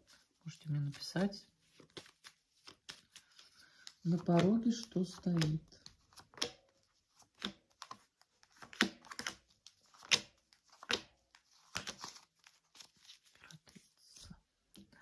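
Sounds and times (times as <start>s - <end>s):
cards snapping and slapping: 1.8s - 13.1s.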